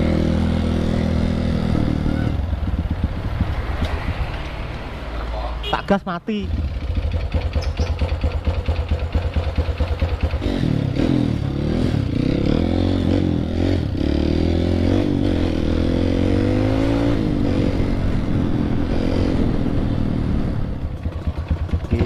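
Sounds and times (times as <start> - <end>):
dirt bike engine revving: 6.4 - 22.0.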